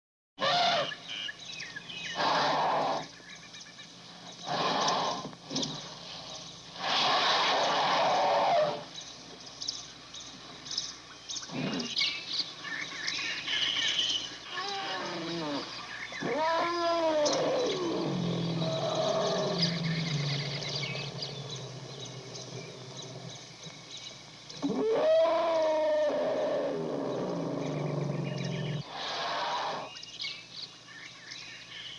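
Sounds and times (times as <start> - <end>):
elephant trumpeting: 0.4 - 1.0, 2.1 - 3.1, 6.8 - 8.9, 14.6 - 23.4, 24.6 - 29.9
birds chirping faintly: 0.4 - 31.9.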